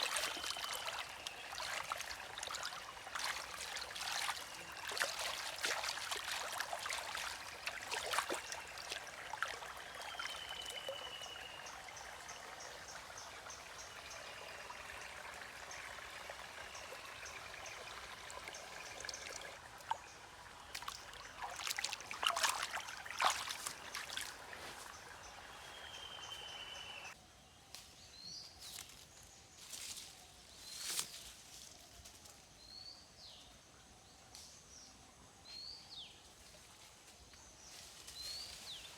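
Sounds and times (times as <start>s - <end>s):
trickling water hiss: 0.0s - 27.2s
bird chirps: 9.9s - 11.8s.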